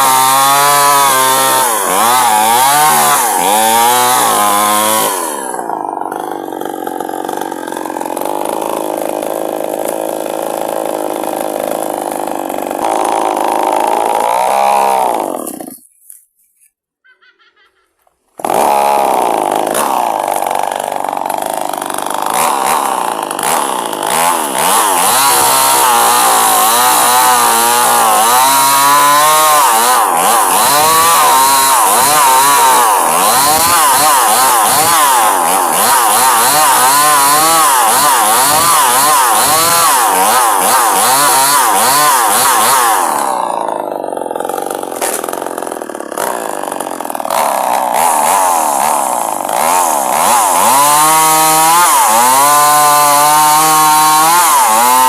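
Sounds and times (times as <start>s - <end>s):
chainsaw cutting log: 0.0s - 16.3s, 18.0s - 55.0s.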